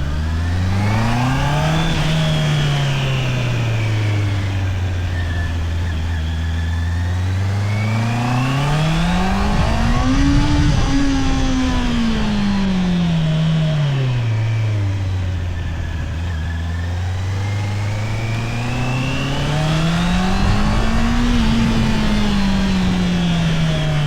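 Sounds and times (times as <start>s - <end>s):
motorcycle engine revving: 0.0s - 24.0s
wind noise: 0.0s - 24.0s.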